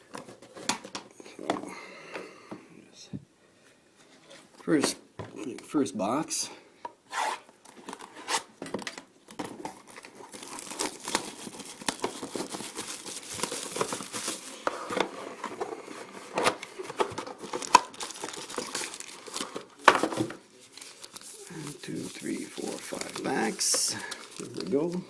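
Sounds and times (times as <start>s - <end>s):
shrink wrap crinkling and tearing: 9.4s - 14.7s, 16.6s - 19.8s, 20.6s - 25.0s.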